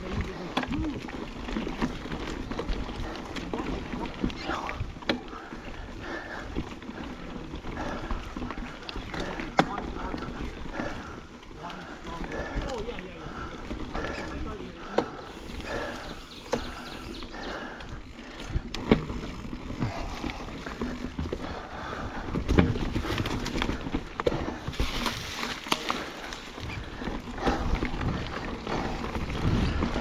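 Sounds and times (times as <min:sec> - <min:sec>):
bike knocking and rattling: 0:00.0 - 0:30.0
bike tyres on dirt and rock: 0:00.0 - 0:30.0
person breathing hard: 0:04.4 - 0:09.5, 0:10.2 - 0:18.7, 0:19.7 - 0:30.0.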